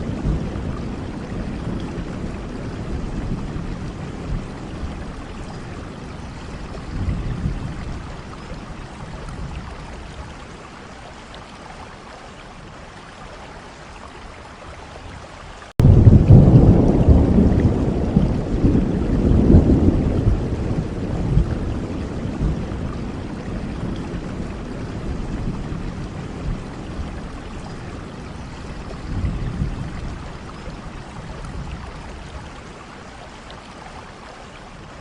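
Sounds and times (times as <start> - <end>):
thunder rumbling: 0.0 - 6.0, 6.6 - 9.9, 15.8 - 32.3
steady rain: 0.0 - 35.0.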